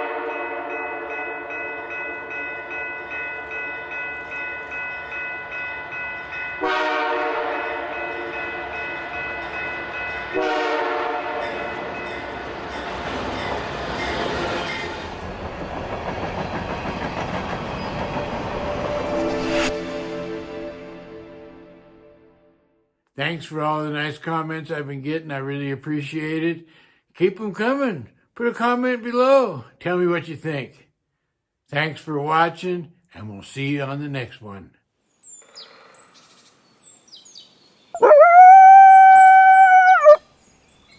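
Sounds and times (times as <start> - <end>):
train horn blasts: 0.0 - 1.2, 6.6 - 8.1, 10.3 - 11.7
passing train rumble and rail clatter: 0.0 - 21.3.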